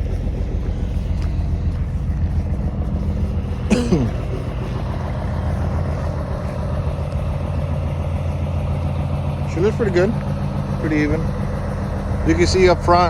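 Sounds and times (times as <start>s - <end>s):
diesel truck engine idling: 0.0s - 13.0s.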